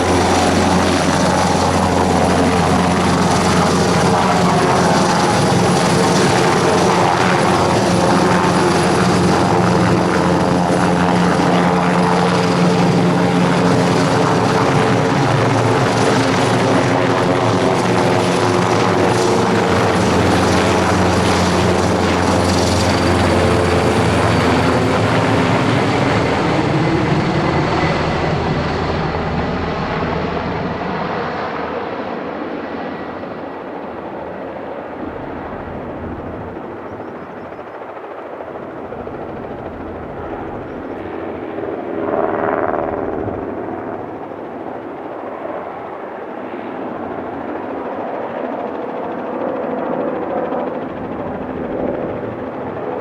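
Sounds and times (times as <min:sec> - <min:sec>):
helicopter rotor and turbine: 0:00.0 - 0:53.0.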